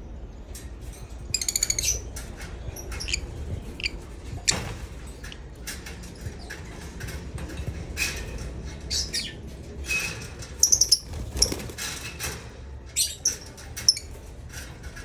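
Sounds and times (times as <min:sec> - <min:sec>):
lovebirds chirping: 0:01.3 - 0:05.5.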